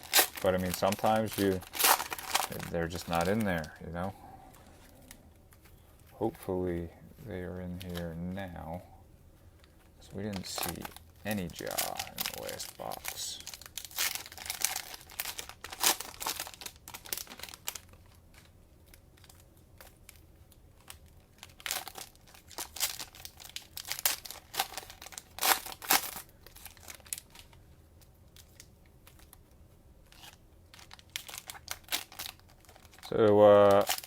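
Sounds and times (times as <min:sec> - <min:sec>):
cellophane crinkling and tearing: 0:00.0 - 0:05.8, 0:07.4 - 0:08.7, 0:09.7 - 0:34.0.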